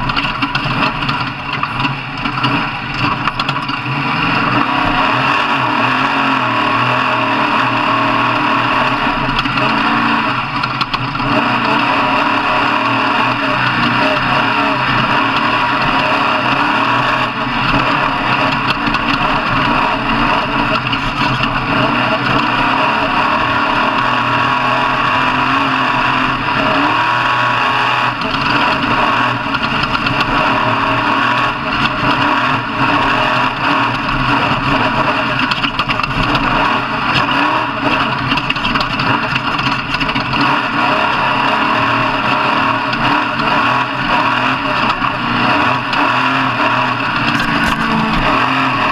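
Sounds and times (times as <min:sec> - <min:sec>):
truck engine running loudly: 0:00.0 - 0:48.9.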